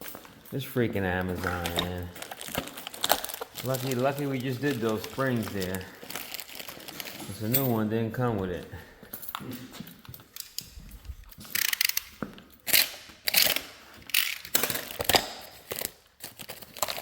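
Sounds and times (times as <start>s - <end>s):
metal tools clicking and clinking: 6.8s - 15.9s.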